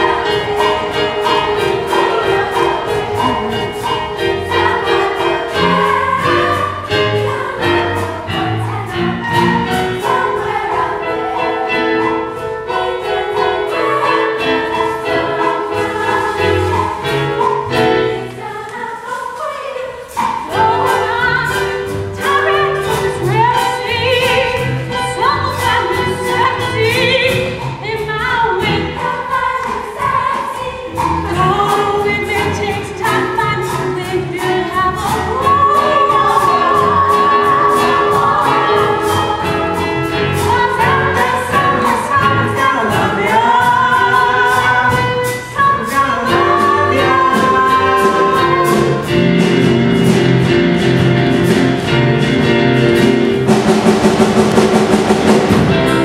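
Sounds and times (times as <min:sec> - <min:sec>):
instrumental accompaniment with bass: 0:00.0 - 0:18.7, 0:20.1 - 0:56.0
chorus singing a show tune: 0:00.0 - 0:27.2, 0:34.9 - 0:49.4.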